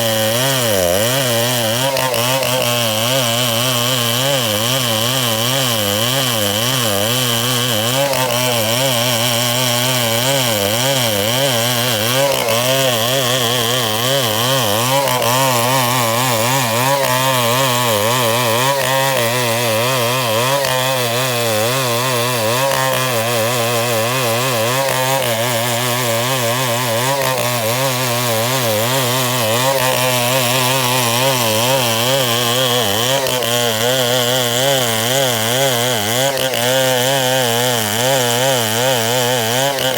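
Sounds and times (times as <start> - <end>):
chainsaw running at high speed: 0.0 - 39.9.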